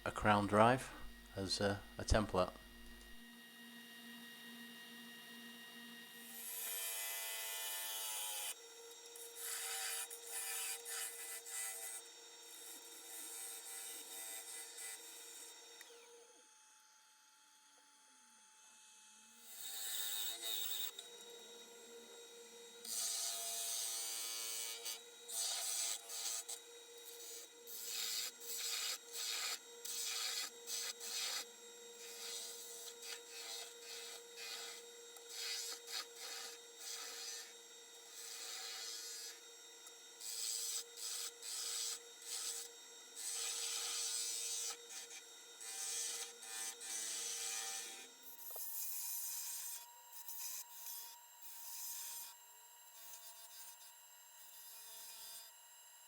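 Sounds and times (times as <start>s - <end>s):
turning tool cutting wood: 6.3s - 16.2s, 19.5s - 52.3s
wood lathe humming: 6.3s - 16.2s, 20.0s - 48.7s.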